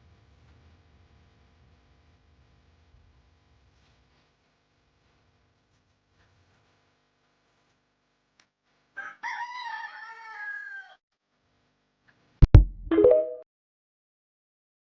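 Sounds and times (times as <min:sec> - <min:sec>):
rooster crowing: 0:09.0 - 0:11.0.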